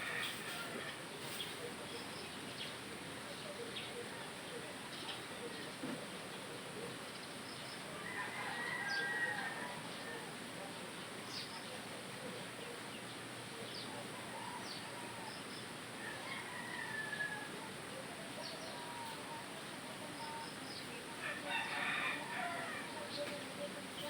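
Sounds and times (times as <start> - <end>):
rooster crowing: 0.0 - 1.0, 8.0 - 10.4, 16.0 - 17.8, 21.2 - 23.0.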